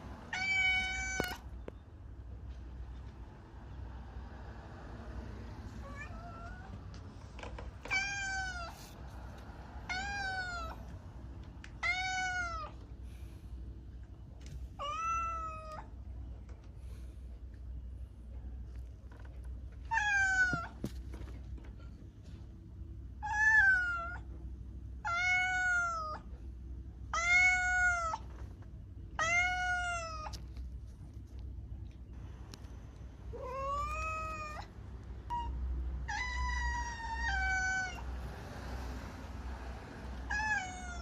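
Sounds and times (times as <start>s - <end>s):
cat meowing: 0.3s - 1.5s, 5.7s - 6.8s, 7.8s - 9.0s, 9.8s - 10.9s, 11.7s - 12.8s, 14.8s - 15.9s, 19.9s - 20.8s, 23.2s - 24.3s, 25.0s - 26.3s, 27.1s - 28.3s, 29.1s - 30.4s, 33.3s - 34.7s, 35.3s - 38.2s, 40.3s - 41.0s.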